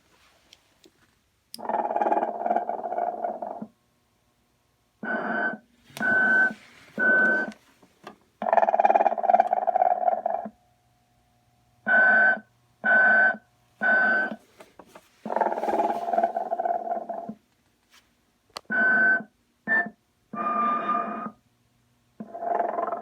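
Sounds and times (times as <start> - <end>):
recorded snoring from small speaker: 15.3 - 17.4, 22.2 - 23.0.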